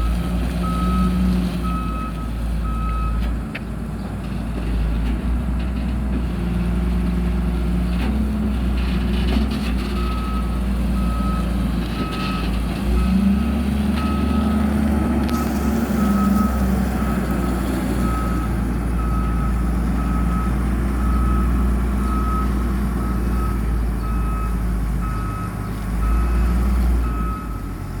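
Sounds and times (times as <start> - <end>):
excavator alarm beeping: 0.0 - 3.2, 10.0 - 27.8
diesel engine drone: 0.0 - 28.0.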